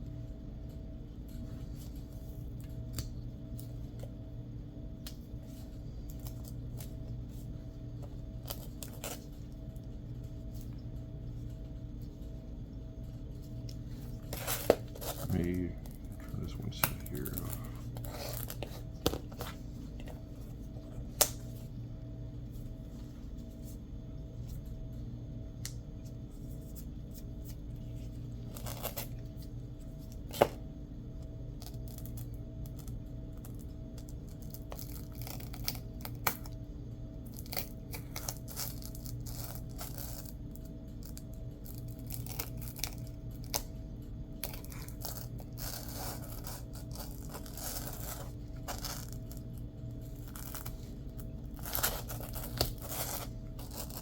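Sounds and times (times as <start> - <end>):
low hum: 0.0 - 34.4
scraping and tearing: 13.8 - 20.2, 44.4 - 54.0.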